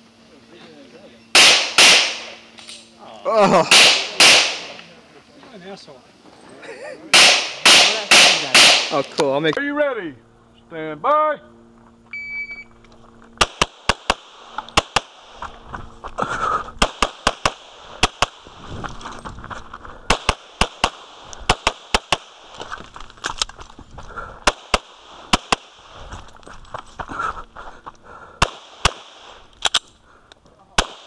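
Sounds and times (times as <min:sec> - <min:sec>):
pistol shots: 0:01.4 - 0:02.5, 0:03.7 - 0:04.8, 0:07.1 - 0:09.1, 0:13.4 - 0:15.2, 0:16.8 - 0:18.4, 0:20.1 - 0:22.4, 0:24.4 - 0:25.8, 0:28.4 - 0:29.8, 0:30.7 - 0:31.0.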